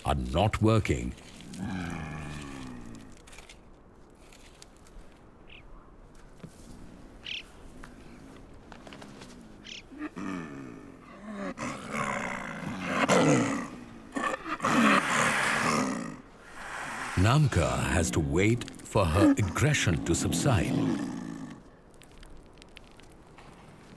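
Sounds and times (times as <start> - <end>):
snow leopards snarling and growling: 1.3 - 3.4, 6.7 - 21.8.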